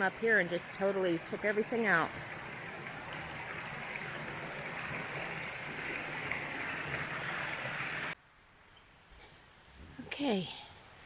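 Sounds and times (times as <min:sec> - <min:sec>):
creek water rushing over rocks: 0:00.0 - 0:08.2.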